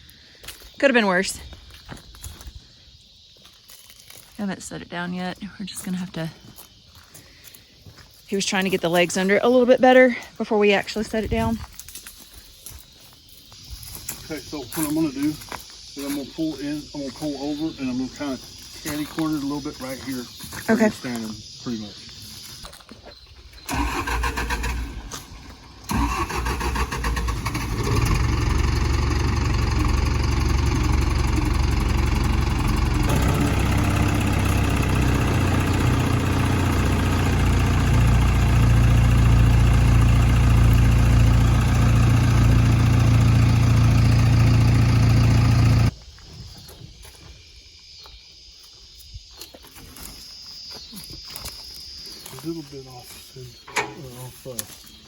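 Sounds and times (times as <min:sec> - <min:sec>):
backhoe engine running: 0:23.7 - 0:45.9.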